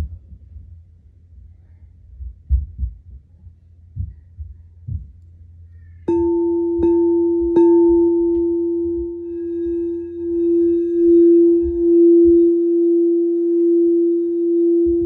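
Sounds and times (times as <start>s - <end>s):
footsteps running upstairs: 2.1s - 5.2s
singing bowl ringing: 6.0s - 15.0s.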